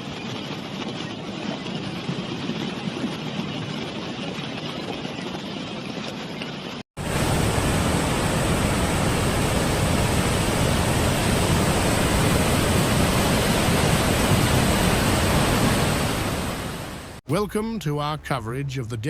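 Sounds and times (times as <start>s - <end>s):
rushing floodwater roar: 7.0s - 17.2s.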